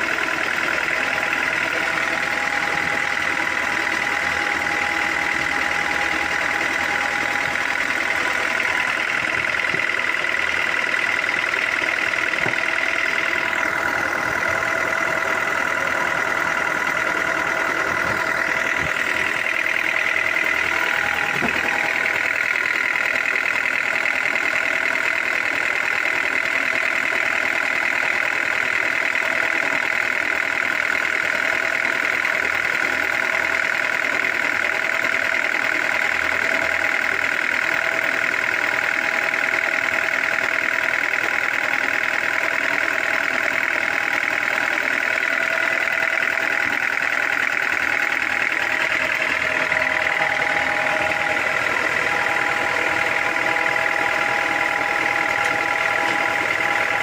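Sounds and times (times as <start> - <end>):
high machine whine: 0.0 - 25.3, 43.2 - 57.0
machinery engine drone: 0.0 - 57.0.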